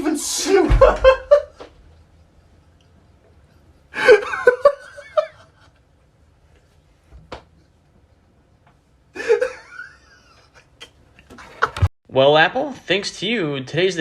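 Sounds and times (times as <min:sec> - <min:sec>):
person laughing: 0:00.3 - 0:01.7, 0:03.6 - 0:05.8, 0:09.1 - 0:11.8.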